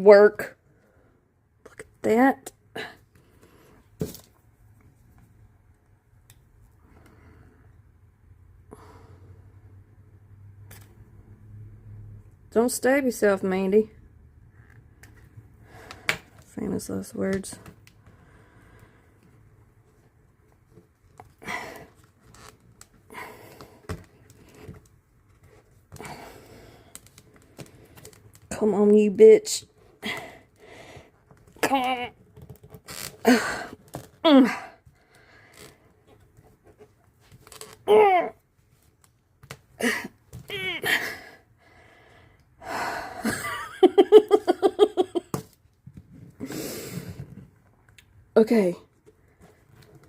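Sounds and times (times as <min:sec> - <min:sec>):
woman laughing: 0:43.2 - 0:45.4.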